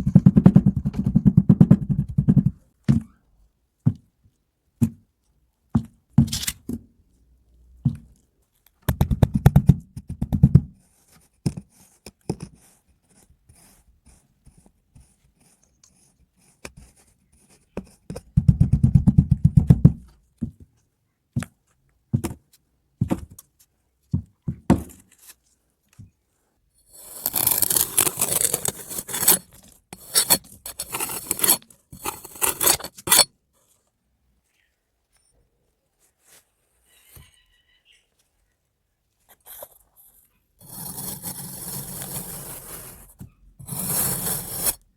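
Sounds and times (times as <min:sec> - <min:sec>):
scratchy scraping: 0:26.9 - 0:33.3, 0:39.4 - 0:44.8.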